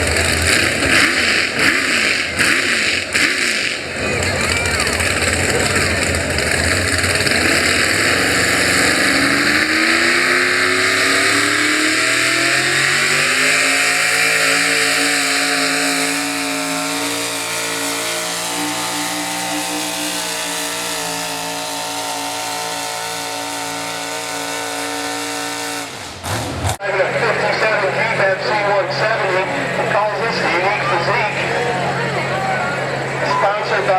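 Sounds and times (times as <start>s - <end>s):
truck engine revving under load: 0.0s - 33.9s.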